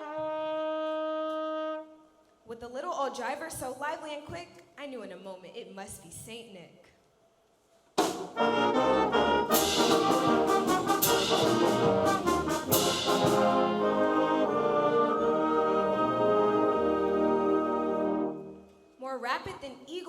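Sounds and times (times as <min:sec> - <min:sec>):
band with brass section: 0:00.0 - 0:02.0, 0:08.0 - 0:18.6
sharp percussion strikes: 0:09.5 - 0:13.9.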